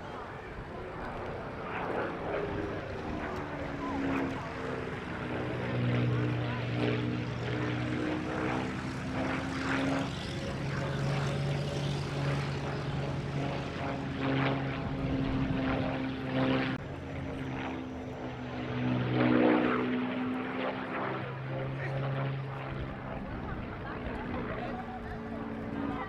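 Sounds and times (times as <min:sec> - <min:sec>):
propeller aircraft engine drone: 0:00.0 - 0:26.0.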